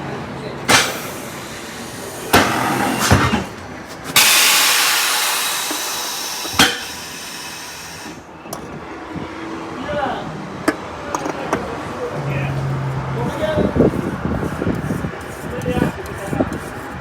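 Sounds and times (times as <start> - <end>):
loud hiss: 0.7 - 3.4, 4.2 - 8.3.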